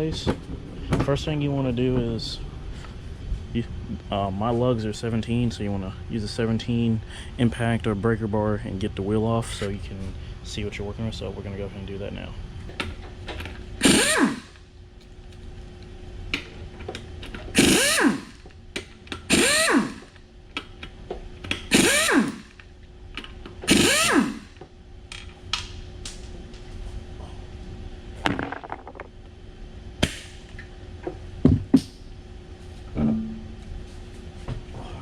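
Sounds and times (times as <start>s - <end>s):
impact wrench spinning: 13.8s - 14.6s, 17.6s - 18.4s, 19.2s - 20.2s, 21.6s - 22.6s, 23.7s - 24.6s.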